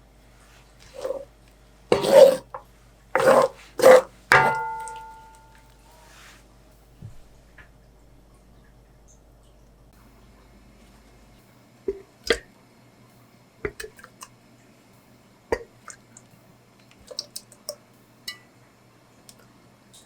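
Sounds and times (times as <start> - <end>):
kitchen items knocking and clicking: 3.2 - 5.6.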